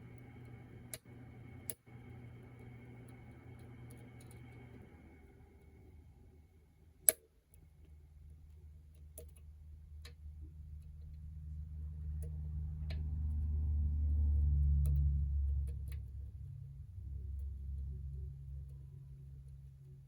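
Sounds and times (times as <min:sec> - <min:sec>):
low rumble: 0:10.5 - 0:19.9.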